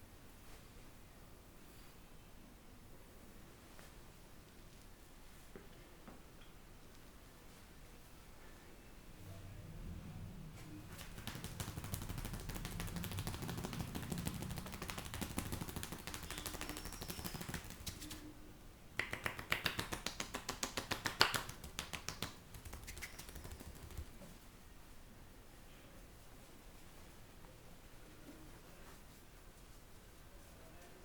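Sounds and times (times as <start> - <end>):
hands tapping and slapping: 10.9 - 18.3, 19.0 - 24.3.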